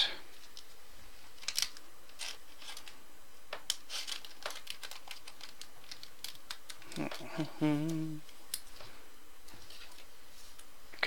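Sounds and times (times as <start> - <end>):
trading cards rustling: 0.4 - 3.0, 3.6 - 8.8.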